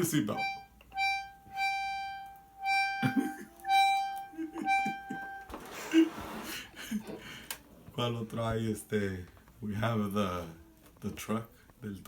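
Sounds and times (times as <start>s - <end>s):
accordion single reedy note: 0.2s - 5.7s.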